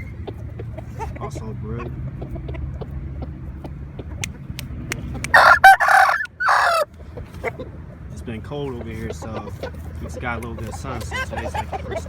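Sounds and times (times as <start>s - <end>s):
rooster crowing: 5.3s - 6.9s.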